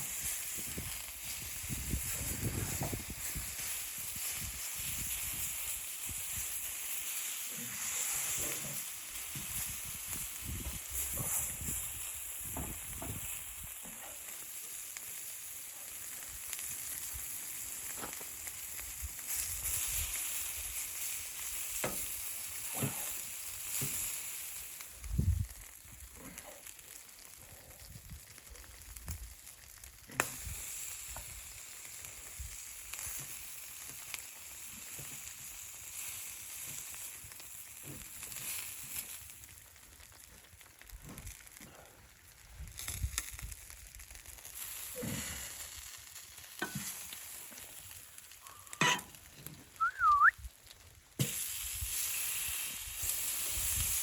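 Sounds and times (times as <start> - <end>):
wood stove sizzling and popping: 0.0 - 54.0
short whistling glide: 49.8 - 50.4.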